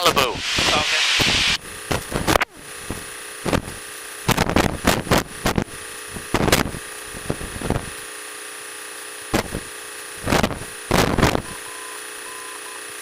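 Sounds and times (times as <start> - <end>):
cabin hiss through headset: 0.0 - 1.6
microphone noise bursts: 0.0 - 8.0, 9.3 - 11.5
morse code beeping: 11.4 - 12.8.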